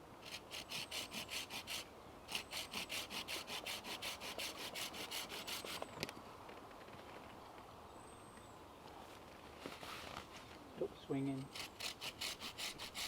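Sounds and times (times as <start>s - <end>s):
hand saw cutting wood: 0.0s - 5.8s, 11.5s - 13.0s.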